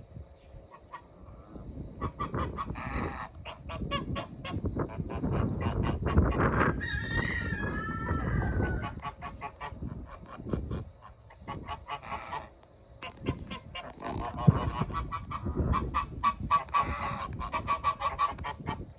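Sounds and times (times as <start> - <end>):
goose honking: 8.6 - 18.9.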